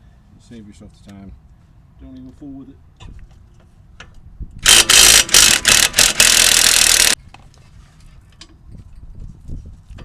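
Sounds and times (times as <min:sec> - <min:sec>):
impact wrench: 0:04.6 - 0:07.2.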